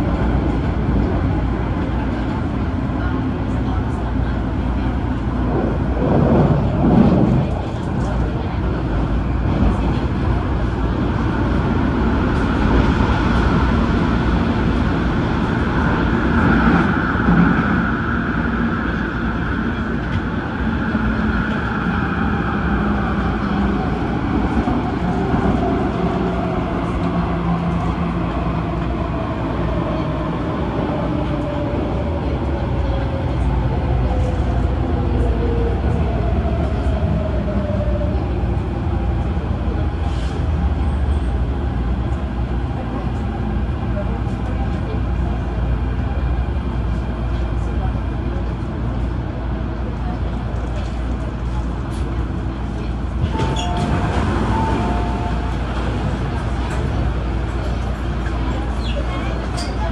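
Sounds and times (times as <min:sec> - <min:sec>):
train wheels rumbling on rails: 0:00.0 - 0:59.9.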